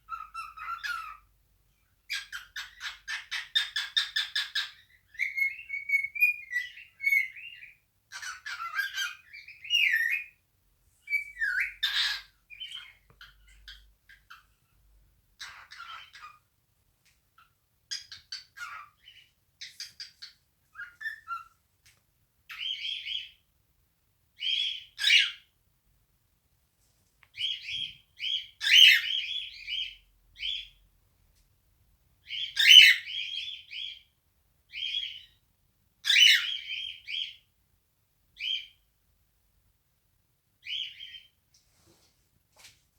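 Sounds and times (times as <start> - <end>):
cockatiel chirping and whistling: 0.1 - 1.2, 2.1 - 10.4, 11.1 - 14.4, 15.4 - 16.4, 17.4 - 21.5, 22.5 - 23.4, 24.4 - 25.5, 27.4 - 30.8, 32.2 - 34.1, 34.7 - 35.4, 36.0 - 37.4, 40.6 - 41.3.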